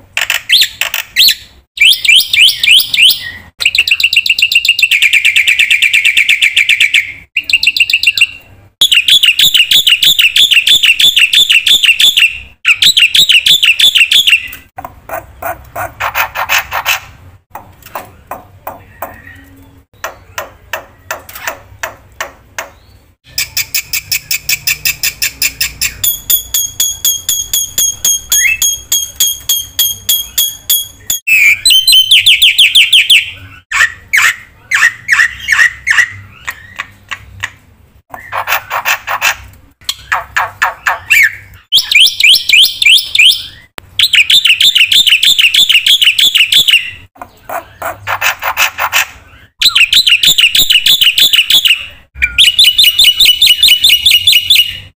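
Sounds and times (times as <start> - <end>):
starling singing chattering song: 22.6 - 37.3.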